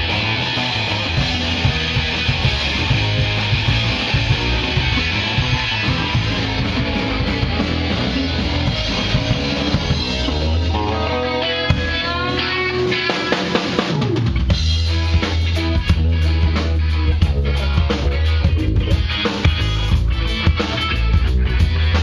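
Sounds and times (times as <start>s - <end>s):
punk rock band playing live: 0.0s - 22.0s
lead guitar single notes: 10.2s - 13.4s.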